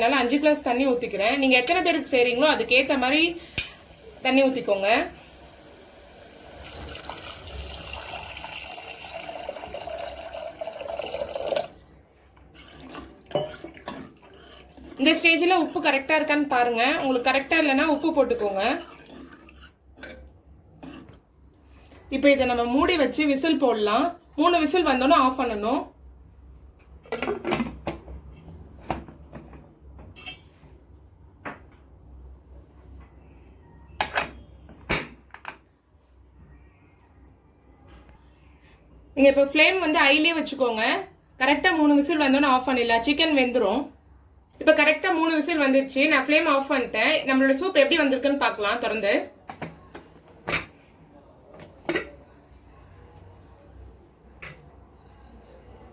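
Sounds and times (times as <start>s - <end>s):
water pouring into pot: 5.3s - 12.1s.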